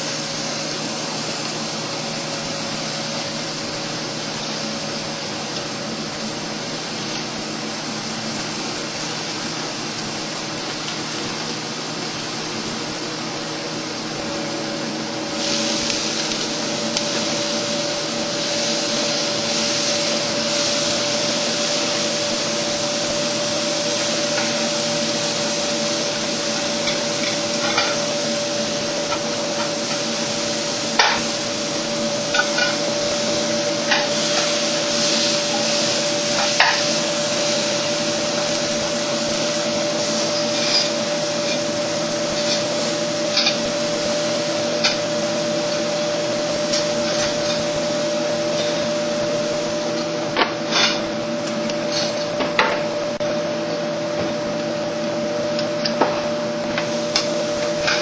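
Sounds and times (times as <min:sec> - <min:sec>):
steak sizzling on a grill: 0:00.0 - 0:58.0.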